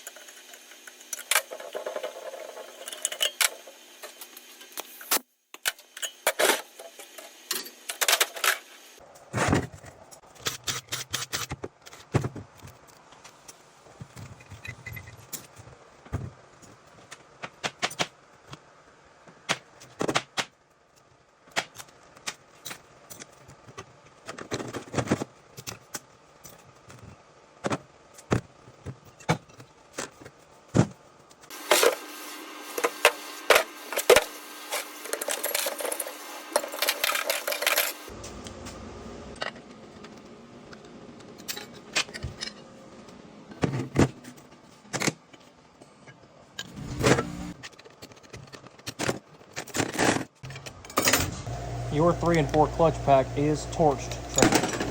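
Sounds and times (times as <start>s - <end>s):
steel parts clinking: 32.8s - 38.1s
mechanical whirring and rattling: 46.6s - 47.7s.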